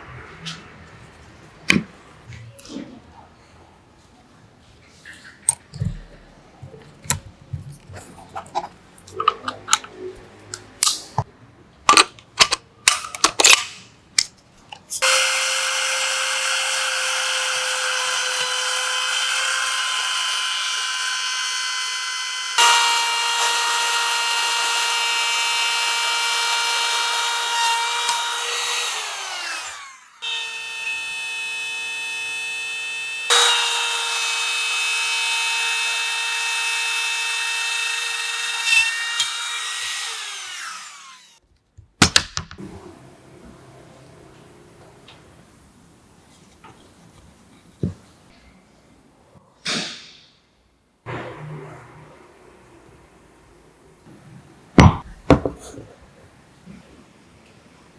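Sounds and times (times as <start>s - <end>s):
power tool motor whining: 15.0s - 41.4s.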